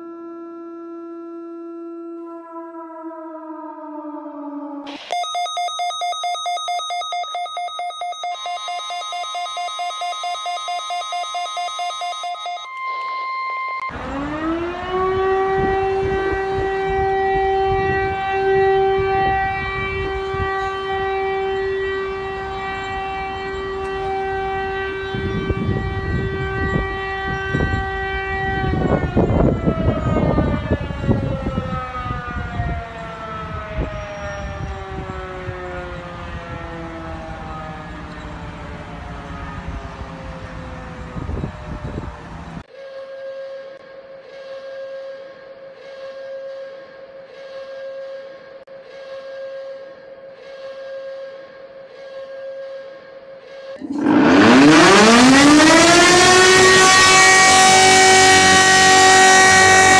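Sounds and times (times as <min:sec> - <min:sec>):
pulsing electronic alarm tone: 0:00.0 - 0:42.2, 0:53.8 - 0:59.9
outdoor warning siren: 0:00.0 - 0:45.2, 0:51.9 - 0:59.9
steady beep: 0:05.0 - 0:13.9.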